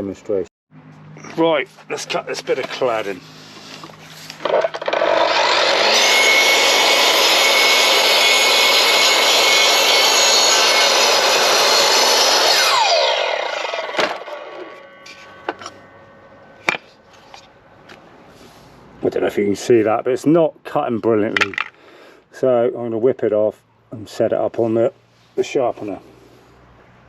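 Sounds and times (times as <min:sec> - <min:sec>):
circular saw cutting wood: 0:01.4 - 0:17.7.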